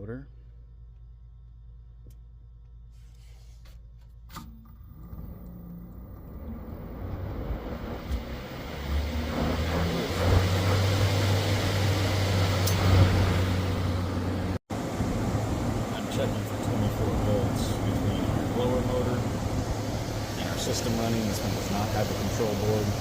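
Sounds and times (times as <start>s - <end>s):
blower motor humming: 0.6s - 23.0s
blower motor click: 4.0s - 11.6s, 12.2s - 13.4s.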